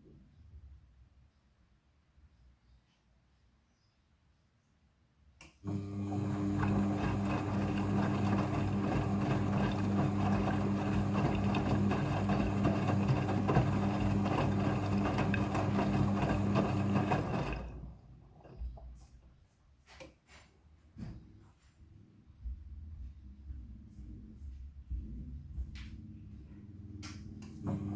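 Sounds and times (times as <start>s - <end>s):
washing machine humming with water: 5.6s - 19.4s, 27.1s - 27.9s.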